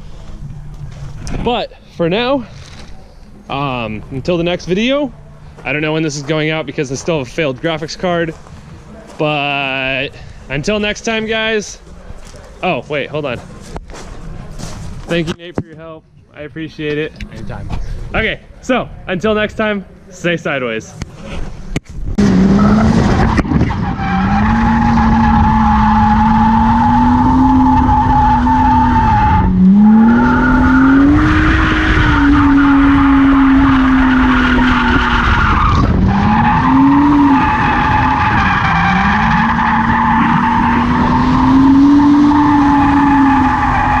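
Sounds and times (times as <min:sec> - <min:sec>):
car engine revving high: 0:22.2 - 0:44.0.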